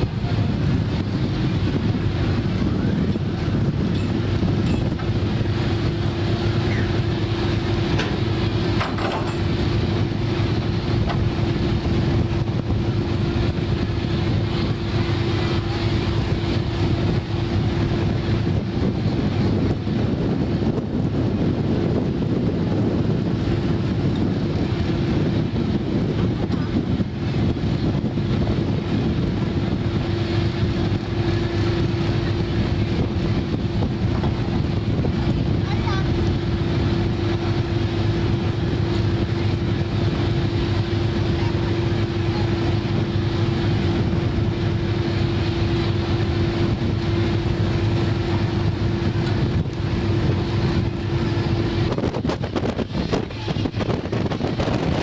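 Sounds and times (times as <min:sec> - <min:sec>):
boat engine droning: 0:00.0 - 0:55.0
wind and water rushing: 0:00.0 - 0:55.0.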